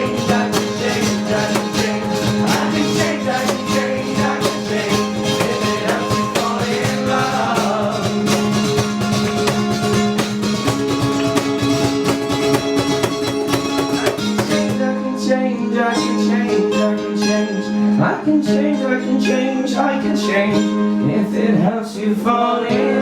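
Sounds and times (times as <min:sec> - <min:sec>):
person singing: 0:00.0 - 0:09.0, 0:14.0 - 0:23.0
strummed guitar: 0:00.0 - 0:23.0.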